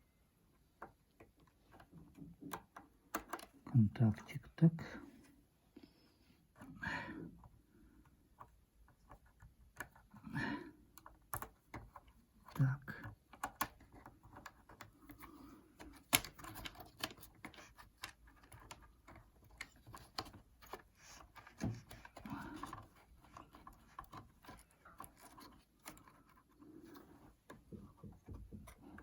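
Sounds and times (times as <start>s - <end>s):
plastic connectors clicking: 0.8s - 3.6s, 10.9s - 15.2s, 15.8s - 29.0s
small tools clicking and tapping: 10.9s - 29.0s.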